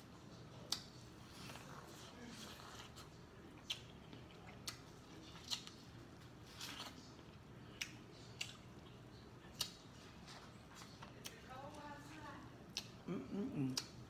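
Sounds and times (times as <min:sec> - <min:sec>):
biting corn and chewing: 0:00.6 - 0:11.5
crisp sharp snaps: 0:09.6 - 0:09.8.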